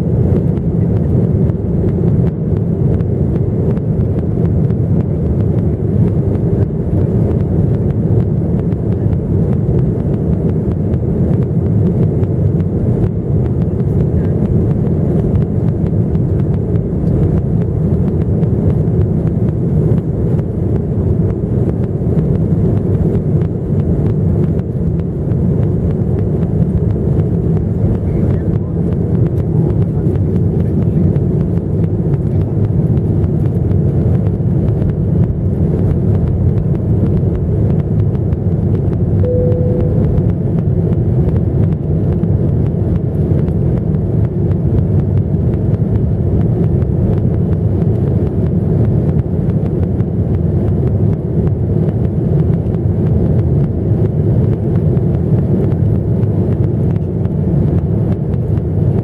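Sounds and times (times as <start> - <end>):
faint tone: 39.2 - 40.6.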